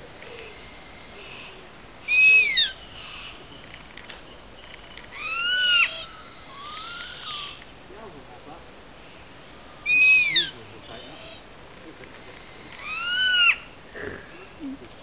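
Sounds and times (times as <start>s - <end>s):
owls squeaking: 2.1s - 2.8s, 5.1s - 7.7s, 9.8s - 11.5s, 12.4s - 13.7s.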